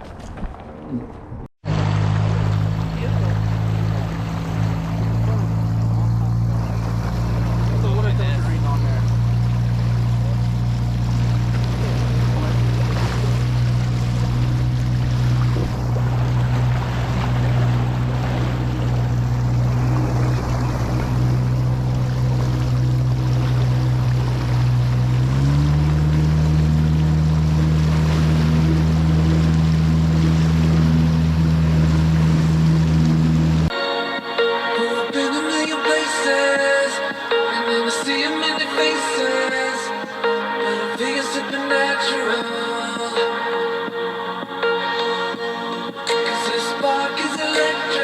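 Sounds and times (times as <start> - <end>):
outboard motor running: 0.9 - 33.9
rushing water: 1.6 - 48.0.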